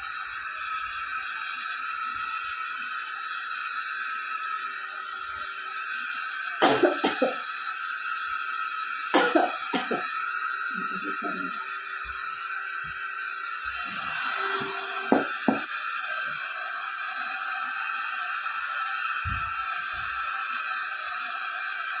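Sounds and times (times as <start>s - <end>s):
person coughing: 6.6s - 7.4s, 9.2s - 10.1s, 15.1s - 15.6s
background hiss: 8.9s - 11.6s.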